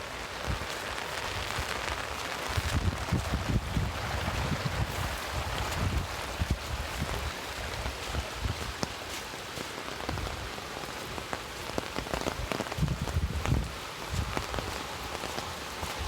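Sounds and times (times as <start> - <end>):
water splashing and pattering: 0.0 - 16.0
wind buffeting microphone: 2.4 - 9.0, 12.1 - 16.0.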